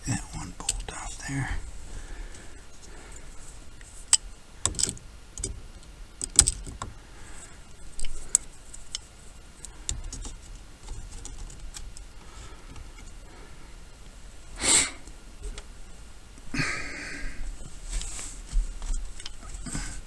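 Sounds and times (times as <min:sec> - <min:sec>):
rustling: 0:00.0 - 0:20.0
hand tool clicks and rattles: 0:04.1 - 0:05.6.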